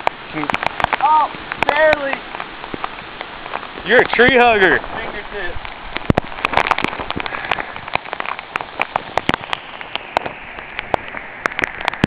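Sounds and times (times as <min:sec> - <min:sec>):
steady hiss: 0:00.0 - 0:12.0.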